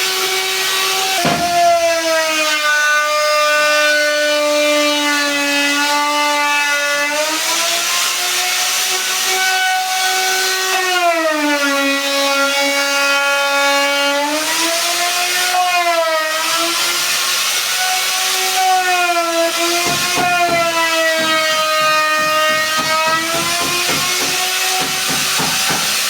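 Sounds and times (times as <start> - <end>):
short knocks: 1.2 - 2.0, 19.8 - 26.0.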